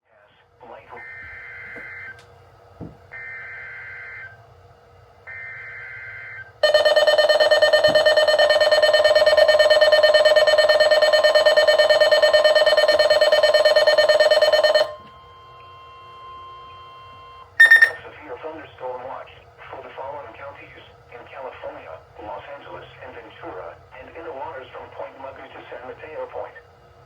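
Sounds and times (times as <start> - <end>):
faint steady tone: 16.4 - 18.0
warbling data bursts: 17.6 - 18.0.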